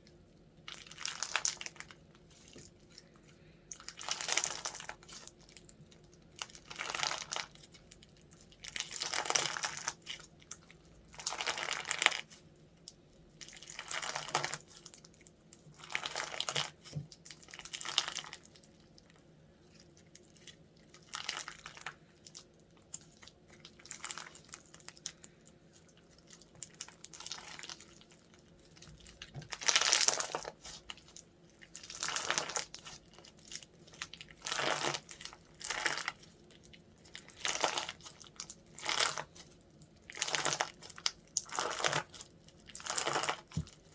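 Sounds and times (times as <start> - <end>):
slime squeezed popping and crackling: 26.2 - 43.9.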